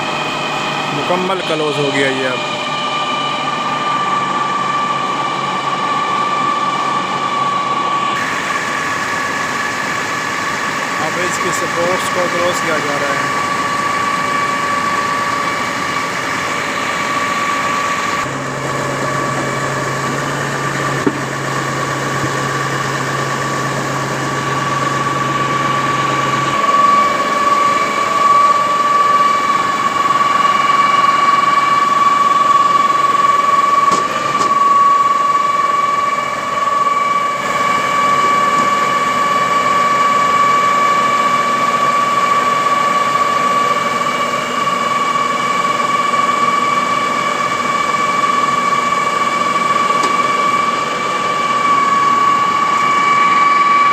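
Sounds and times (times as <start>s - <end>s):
low hum: 0.0s - 45.4s
diesel engine and hydraulic whine: 0.0s - 53.9s.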